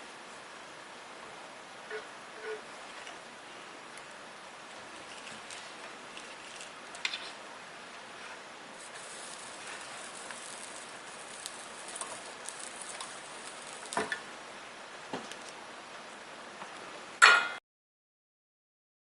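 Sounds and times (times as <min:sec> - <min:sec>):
steady hiss: 0:00.0 - 0:17.2.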